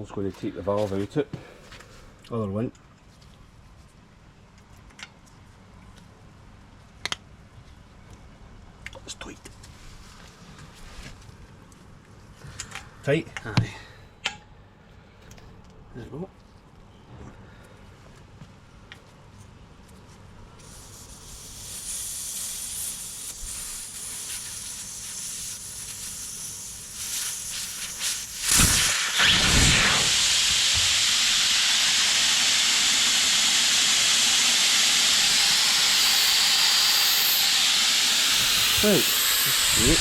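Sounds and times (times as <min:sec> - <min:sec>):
air hissing out of tyre: 0:20.6 - 0:40.0.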